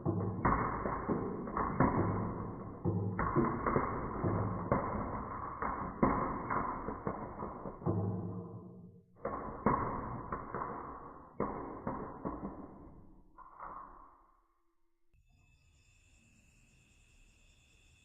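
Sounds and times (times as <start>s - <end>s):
marbles rolling on wooden run: 0.0s - 13.8s.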